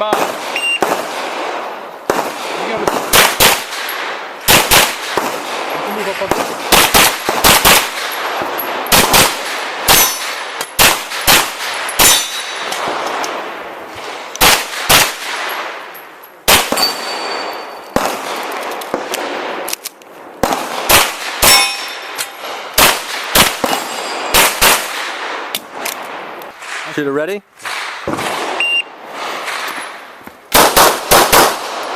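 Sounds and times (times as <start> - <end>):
pistol shots: 0.0 - 19.8, 20.4 - 26.8, 27.6 - 31.9
metallic ring of steel targets: 9.9 - 10.8, 11.8 - 12.8, 15.4 - 18.0, 21.4 - 22.5.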